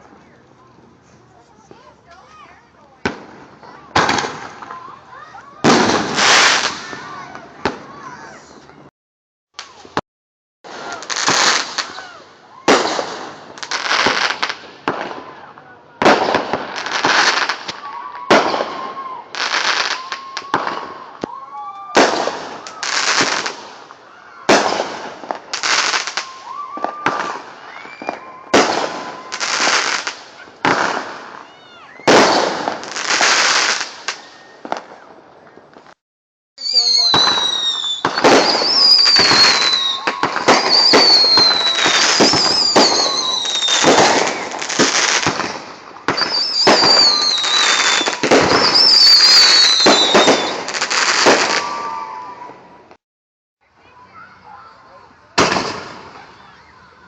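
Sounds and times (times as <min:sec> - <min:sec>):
fireworks bangs and crackles: 0:00.0 - 0:08.9, 0:09.6 - 0:10.0, 0:10.6 - 0:36.0, 0:36.6 - 0:53.0, 0:55.2 - 0:57.0
fireworks falling whistles: 0:10.8 - 0:15.3, 0:16.3 - 0:36.0, 0:36.6 - 0:52.5, 0:55.4 - 0:57.0.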